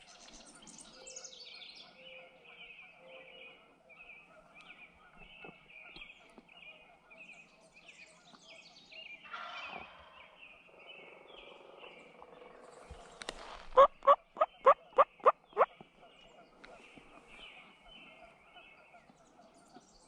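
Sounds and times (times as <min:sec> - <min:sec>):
high songbird chirps: 0:00.0 - 0:20.0
turkey gobbling: 0:13.7 - 0:15.7.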